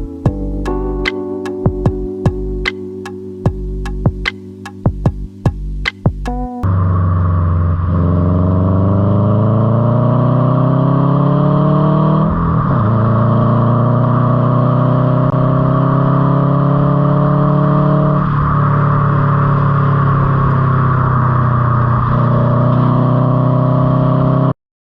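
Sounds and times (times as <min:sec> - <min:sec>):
car engine shifting gears: 0:05.0 - 0:24.4.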